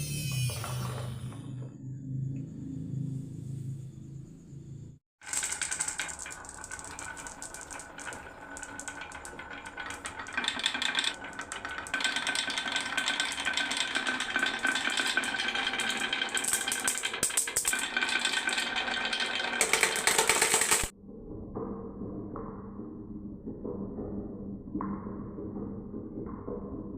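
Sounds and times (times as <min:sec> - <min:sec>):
marbles rattling down wooden run: 0:05.2 - 0:20.9.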